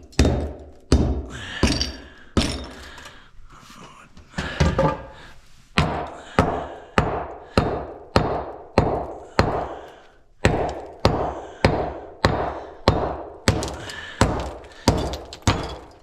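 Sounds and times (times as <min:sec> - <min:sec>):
hammer driving nails into wood: 0:05.8 - 0:16.0.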